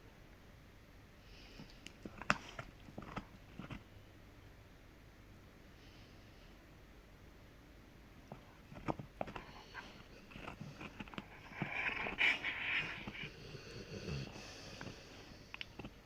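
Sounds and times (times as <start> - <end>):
dog teeth cracking on chew: 1.6 - 3.9, 8.3 - 13.8, 14.8 - 16.0
dog breathing: 8.3 - 16.0.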